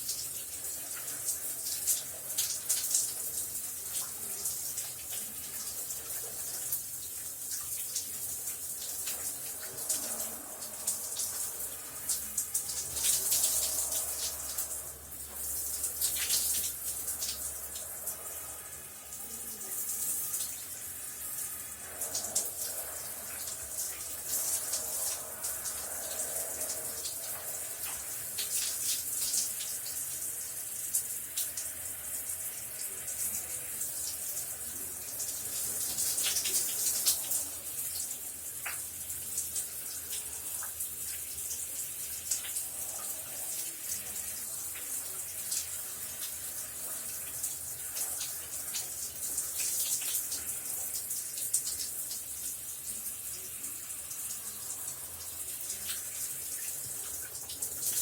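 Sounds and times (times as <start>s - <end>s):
shower spray hissing: 0.0s - 58.0s
water splashes and drips: 0.0s - 58.0s.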